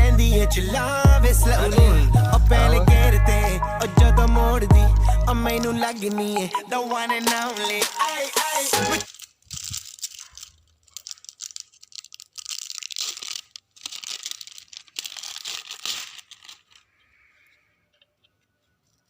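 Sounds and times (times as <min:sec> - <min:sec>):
packaging tearing and crinkling: 0:05.8 - 0:17.0.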